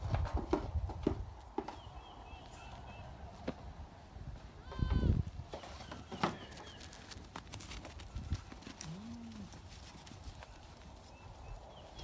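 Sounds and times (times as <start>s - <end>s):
hoof knocks: 0.0s - 2.0s.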